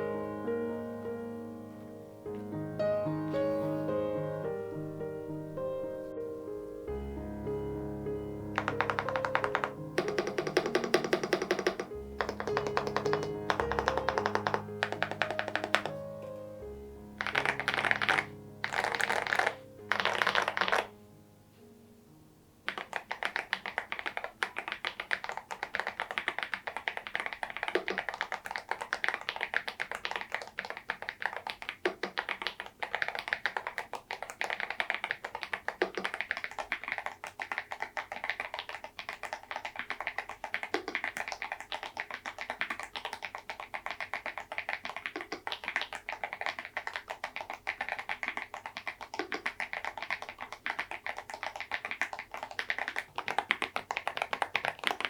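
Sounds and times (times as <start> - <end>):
fast mechanical keyboard typing: 8.6 - 16.0, 17.2 - 20.9, 22.7 - 55.0.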